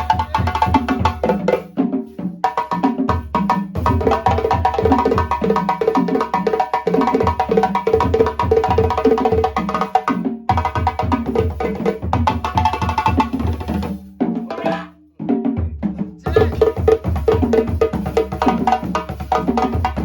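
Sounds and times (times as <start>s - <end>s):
balafon melody: 0.0s - 1.2s, 14.5s - 15.1s, 16.3s - 16.9s
drum beat: 0.0s - 20.0s.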